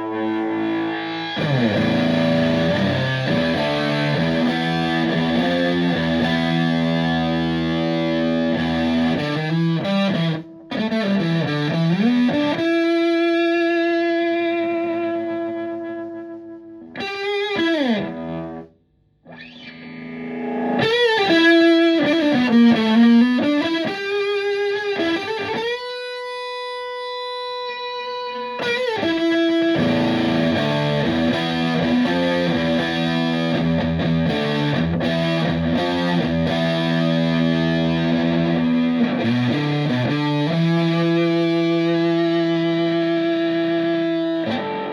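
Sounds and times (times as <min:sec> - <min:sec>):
fuzz electric guitar: 0:00.0 - 0:44.9.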